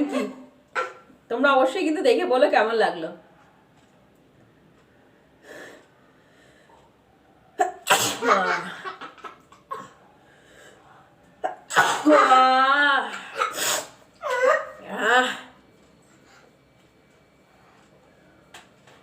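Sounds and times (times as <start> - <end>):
woman sneezing loudly: 7.6 - 8.7, 11.5 - 14.8.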